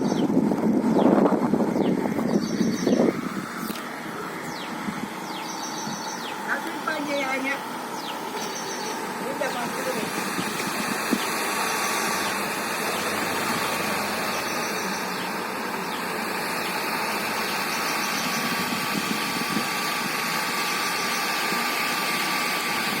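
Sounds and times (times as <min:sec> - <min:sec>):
small electric motor whirring: 0:00.0 - 0:23.0.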